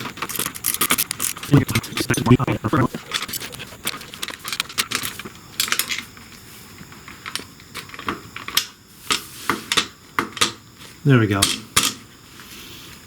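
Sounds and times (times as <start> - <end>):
ratchet wrench clicking: 0.3 - 1.5.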